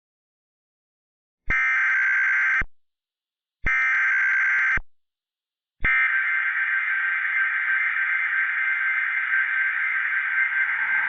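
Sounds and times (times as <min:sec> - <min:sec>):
buzzy digital data bursts: 0:06.5 - 0:11.0.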